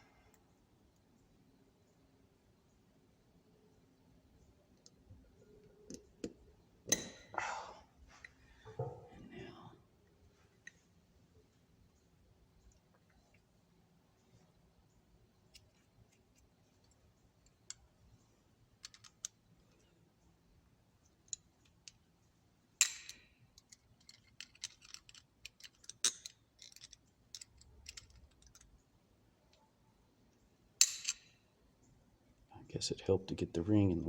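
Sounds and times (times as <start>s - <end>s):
small metal clicks and taps: 18.8s - 19.8s, 22.8s - 28.8s.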